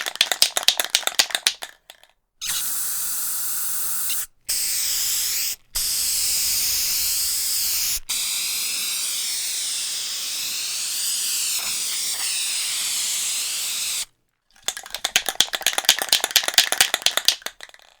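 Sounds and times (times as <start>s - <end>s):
spray can ball rattling: 0.0s - 4.3s, 5.0s - 18.0s
aerosol spray can hissing: 2.4s - 14.1s.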